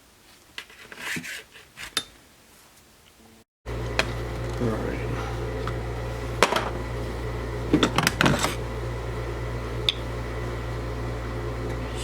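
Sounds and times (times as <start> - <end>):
steady low hum: 3.7 - 12.0.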